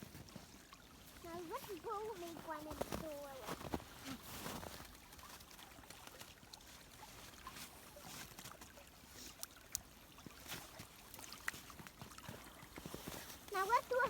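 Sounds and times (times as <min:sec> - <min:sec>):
snow crunching and scraping: 0:01.2 - 0:04.9, 0:12.3 - 0:14.0.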